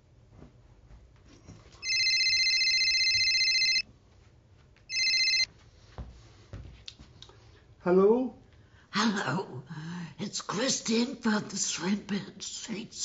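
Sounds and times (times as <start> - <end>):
telephone ringing: 1.8 - 3.8, 4.9 - 5.5.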